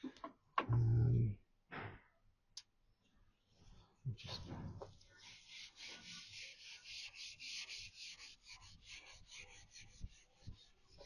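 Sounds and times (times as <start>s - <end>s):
abrasive pad scrubbing metal: 5.2s - 11.0s.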